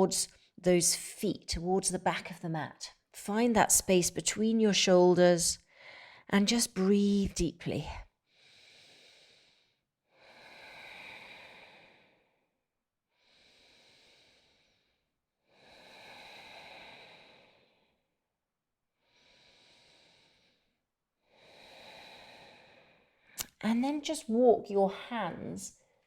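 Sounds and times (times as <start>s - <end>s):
woman breathing slowly and deeply: 5.6s - 6.3s, 8.3s - 18.2s, 19.0s - 23.4s.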